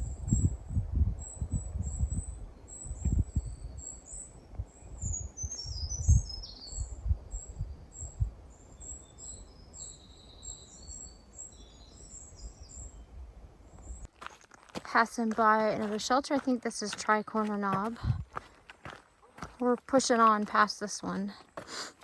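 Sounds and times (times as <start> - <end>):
songbirds chirping and singing: 1.2 - 13.2
thumps and rumble on microphone: 2.9 - 3.5, 17.8 - 18.4.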